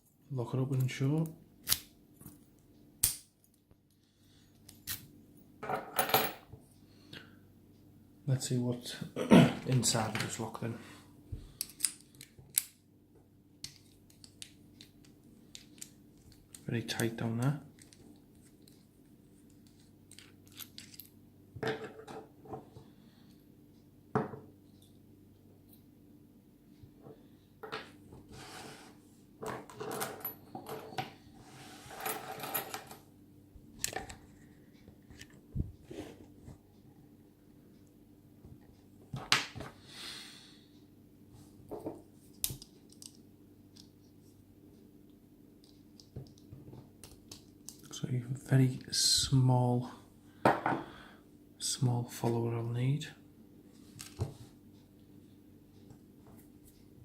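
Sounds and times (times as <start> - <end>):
steady low hum: 30.2 - 57.0.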